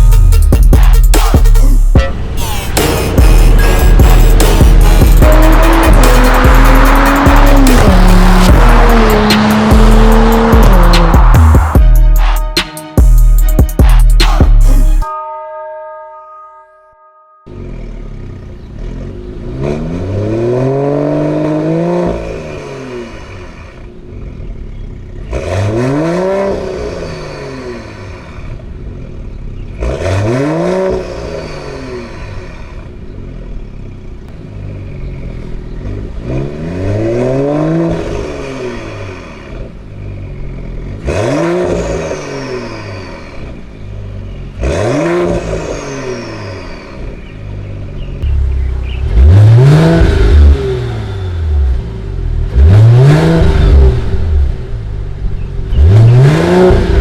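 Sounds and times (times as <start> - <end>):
car engine idling: 0.0 - 14.2
car engine revving: 0.0 - 15.0, 17.5 - 57.0.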